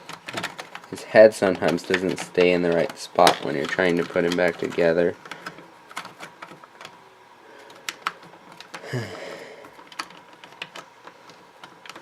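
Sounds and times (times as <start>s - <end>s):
plastic toy parts clicking: 0.0s - 0.9s, 1.6s - 7.0s, 9.7s - 12.0s.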